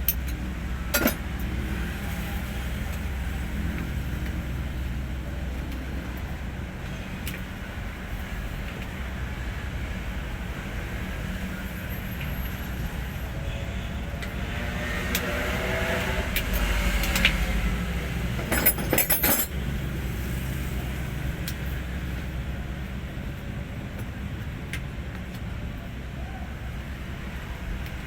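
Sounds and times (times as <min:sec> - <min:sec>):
metallic clinking: 0:18.4 - 0:19.6.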